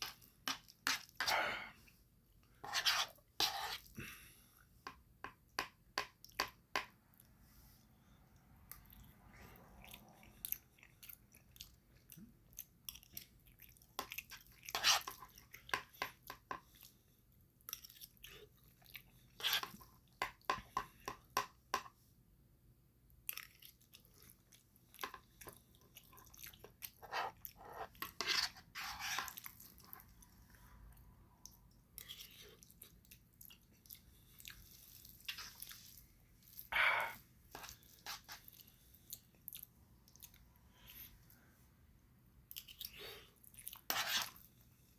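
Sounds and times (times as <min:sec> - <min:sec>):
person chewing noodles: 0:08.6 - 0:20.2, 0:23.1 - 0:41.5, 0:42.4 - 0:44.6.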